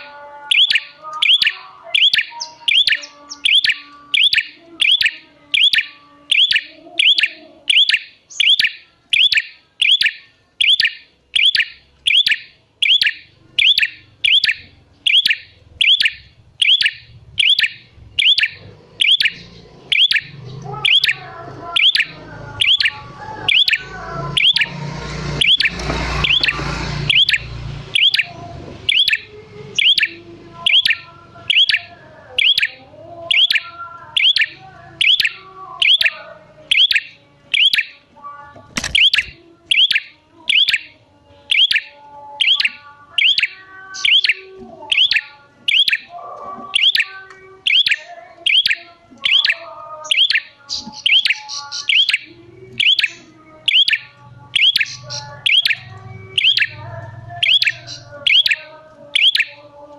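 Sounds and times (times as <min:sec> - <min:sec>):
sharp click: 0:38.7 - 0:39.4.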